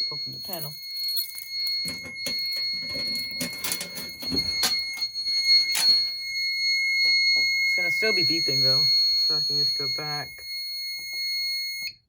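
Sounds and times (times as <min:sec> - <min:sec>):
high-pitched alarm panel tone: 0:00.0 - 0:12.0.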